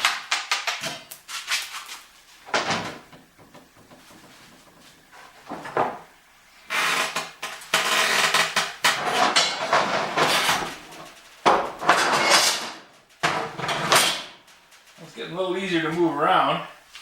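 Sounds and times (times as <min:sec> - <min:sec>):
metal rack clanking and scraping: 0:03.7 - 0:15.1.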